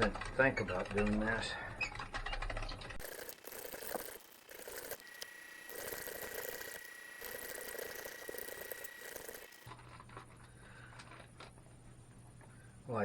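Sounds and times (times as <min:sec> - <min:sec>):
meat grinder grinding: 0:03.0 - 0:09.7
thin steady whine: 0:03.0 - 0:09.8.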